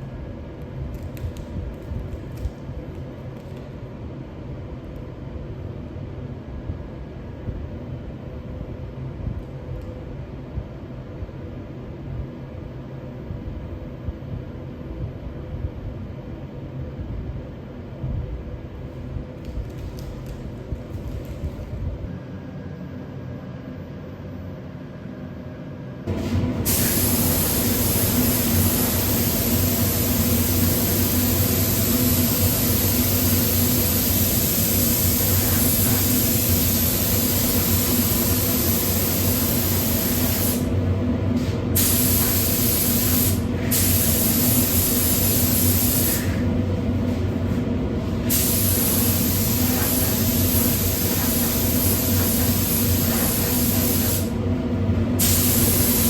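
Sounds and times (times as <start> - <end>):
steady low hum: 0.0 - 56.0
paint spray gun hissing: 26.6 - 40.8, 41.8 - 46.4, 48.2 - 54.3, 55.2 - 56.0.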